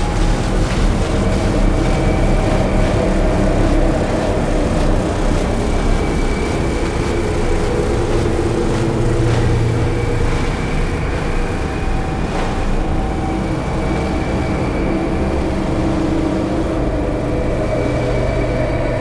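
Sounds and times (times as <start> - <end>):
drone and noise music: 0.0 - 19.0.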